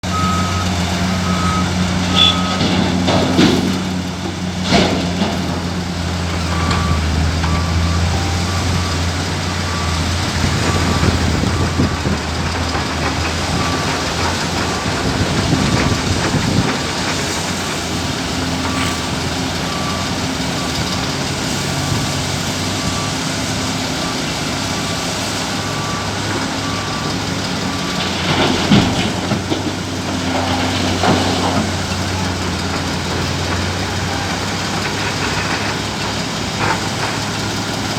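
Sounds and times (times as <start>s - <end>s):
heavy diesel machinery running: 0.0s - 37.9s
reversing alarm beeping: 0.1s - 2.9s, 6.3s - 29.2s.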